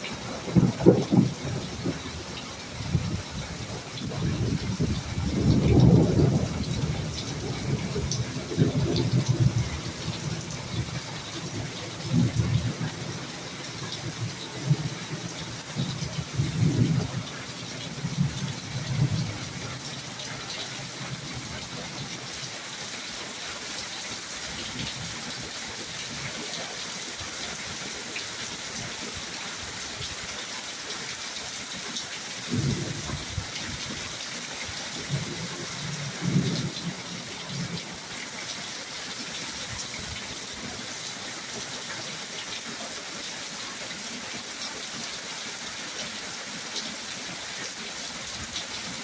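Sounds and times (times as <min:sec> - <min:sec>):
heavy rain falling: 0:00.0 - 0:49.0
thunder rumbling: 0:00.4 - 0:02.2, 0:02.8 - 0:13.1, 0:32.5 - 0:33.5.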